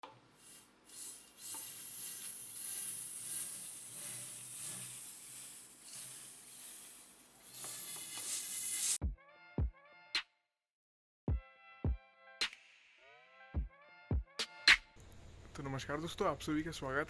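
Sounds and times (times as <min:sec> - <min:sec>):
pressurised fluid spraying: 0:00.3 - 0:09.0.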